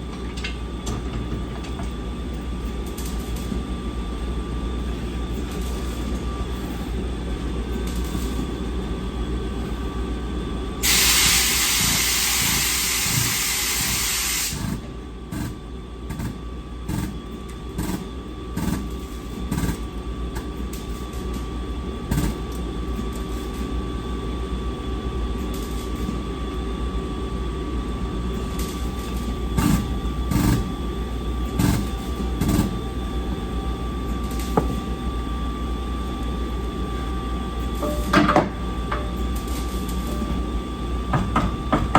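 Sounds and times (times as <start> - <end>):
steady low hum: 0.0 - 41.9
hiss: 10.8 - 14.6.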